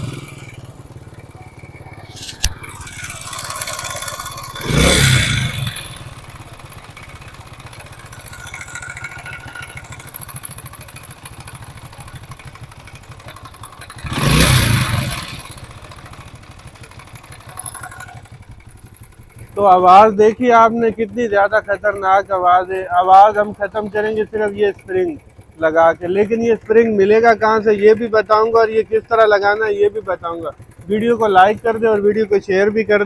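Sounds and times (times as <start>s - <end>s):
motorcycle engine blipped: 0.0s - 33.0s
motorcycle engine idling: 0.0s - 33.0s
sharp click: 2.1s - 2.8s.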